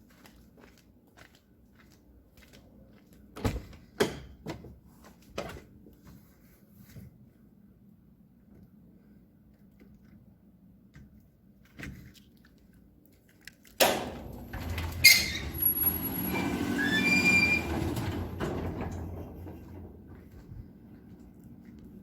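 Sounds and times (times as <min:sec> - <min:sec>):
industrial low hum: 0:13.8 - 0:22.0
squealing tones: 0:14.6 - 0:19.0.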